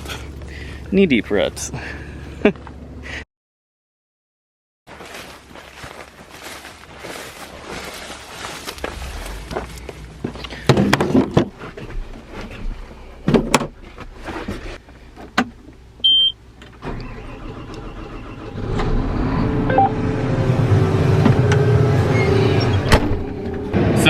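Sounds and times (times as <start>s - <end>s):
vehicle engine running: 7.4s - 12.4s
short beep: 19.7s - 20.0s.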